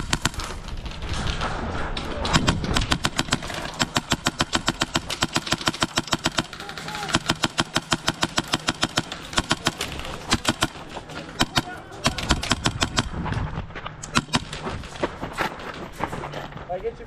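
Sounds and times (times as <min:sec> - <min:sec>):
airsoft guns firing: 0:00.0 - 0:13.4, 0:14.0 - 0:15.6.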